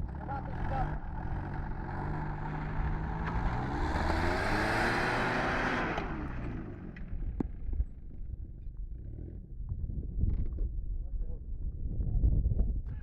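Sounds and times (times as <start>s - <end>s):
engine revving: 0.0s - 7.4s.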